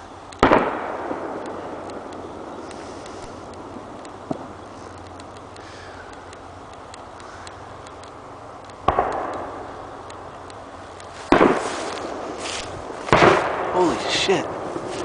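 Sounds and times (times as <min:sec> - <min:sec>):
fireworks booming: 0:00.0 - 0:05.6, 0:08.8 - 0:10.2, 0:11.0 - 0:15.0
faint ticking: 0:01.4 - 0:11.2.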